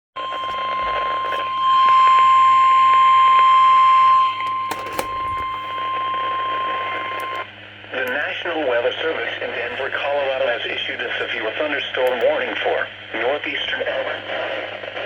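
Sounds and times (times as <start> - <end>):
high warning alarm tone: 0.2 - 7.5
clicks: 4.3 - 5.7, 6.9 - 8.3, 12.0 - 12.3.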